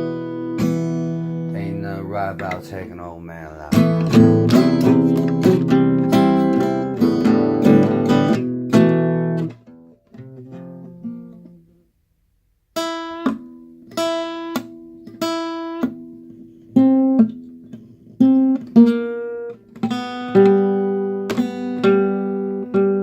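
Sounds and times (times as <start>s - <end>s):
acoustic guitar strumming chords: 0.0s - 11.6s.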